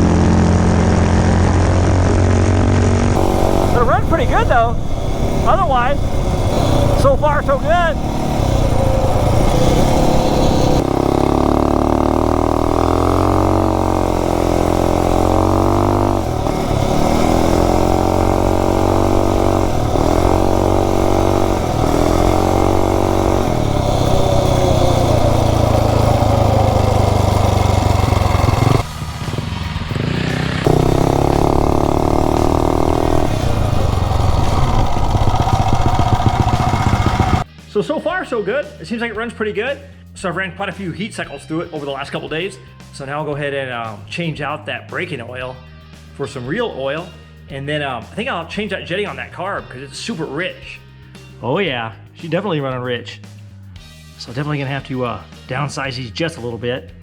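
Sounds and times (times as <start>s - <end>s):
minibike engine revving: 0.0s - 37.5s.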